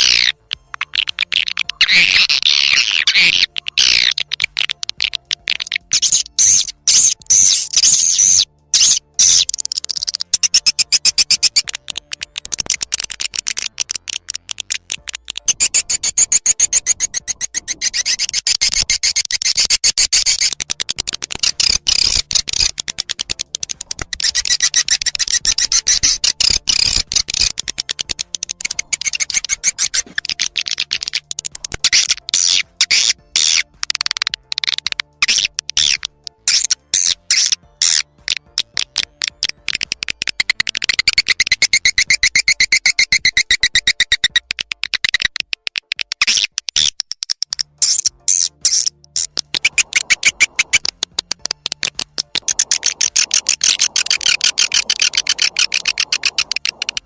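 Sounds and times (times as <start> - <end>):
swiftlets chattering: 0.0 - 46.8, 47.4 - 57.0.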